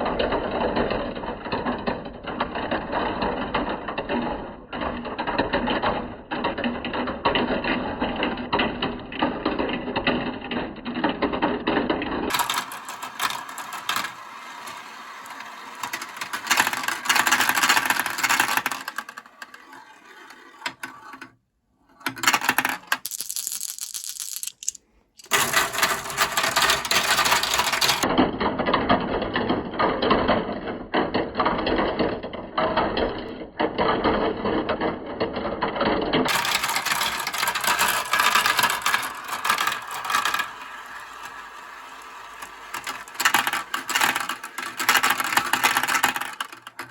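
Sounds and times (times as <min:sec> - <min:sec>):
marbles rattling down track: 0:12.3 - 0:21.3, 0:22.1 - 0:28.1, 0:36.3 - 0:46.9.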